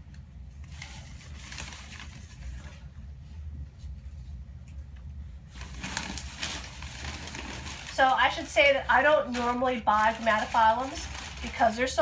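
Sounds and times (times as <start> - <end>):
steady low hum: 0.0 - 12.0
paper rustling: 0.5 - 3.0, 5.5 - 12.0.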